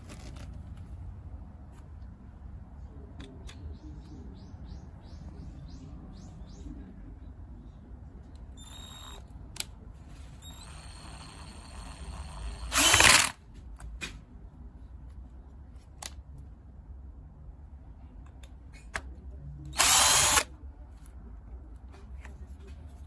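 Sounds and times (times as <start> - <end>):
cordless drill whining: 8.6 - 9.2, 10.4 - 13.4, 19.8 - 20.5.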